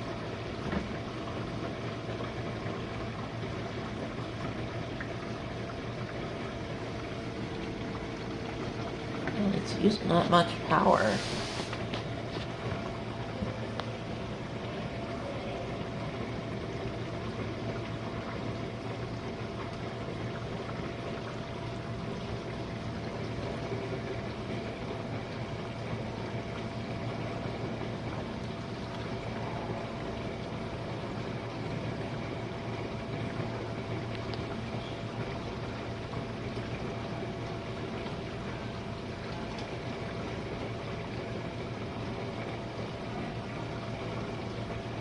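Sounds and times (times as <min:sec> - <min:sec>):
dishwasher motor hum: 0:00.0 - 0:45.0
water spraying and splashing: 0:10.9 - 0:12.6.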